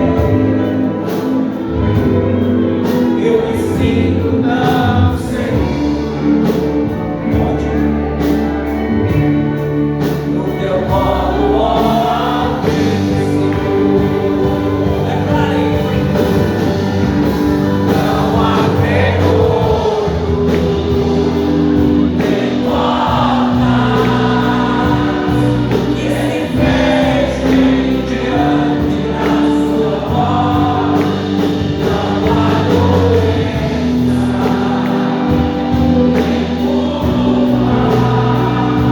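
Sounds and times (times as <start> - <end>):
choir singing gospel: 0.0 - 38.9
instrumental accompaniment: 0.0 - 38.9.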